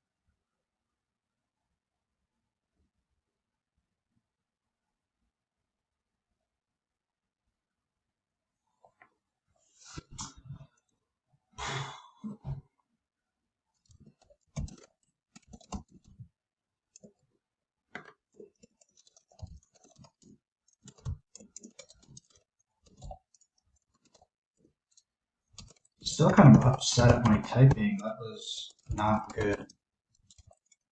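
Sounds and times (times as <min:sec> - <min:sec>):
keyboard typing: 0:13.8 - 0:16.3, 0:16.9 - 0:17.2, 0:17.9 - 0:30.9.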